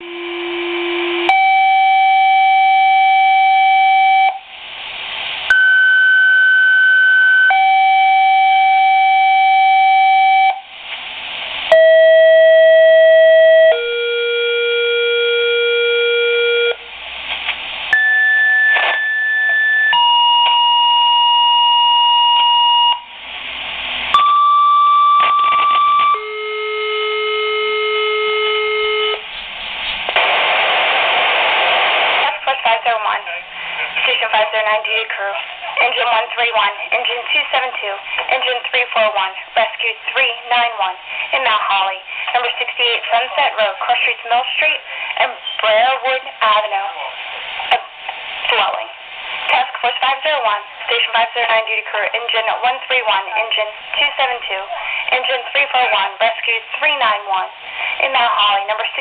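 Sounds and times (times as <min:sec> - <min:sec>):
pager two-tone alert tones: 0:24.2 - 0:29.2
radio static bursts: 0:29.2 - 0:45.3, 0:46.5 - 0:57.0.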